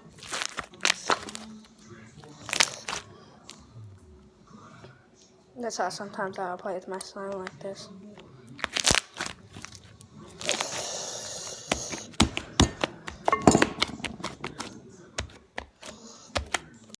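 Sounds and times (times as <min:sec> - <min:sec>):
slime squelching and popping: 0:00.0 - 0:01.6, 0:02.3 - 0:03.1, 0:08.6 - 0:16.8.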